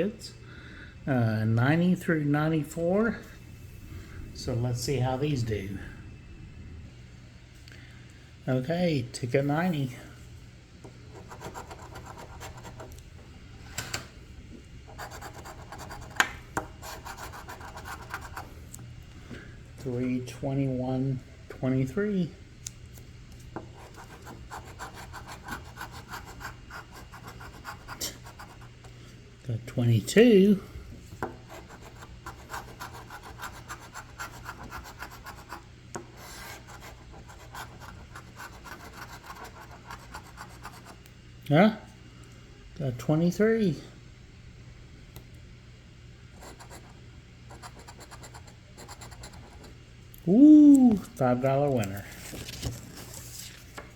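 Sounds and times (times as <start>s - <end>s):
lottery ticket being scratched: 11.1s - 12.9s, 14.9s - 18.5s, 23.6s - 28.8s, 31.4s - 35.6s, 36.2s - 41.0s, 47.6s - 49.7s
scratch card coating scraped: 11.1s - 13.0s, 23.8s - 28.7s.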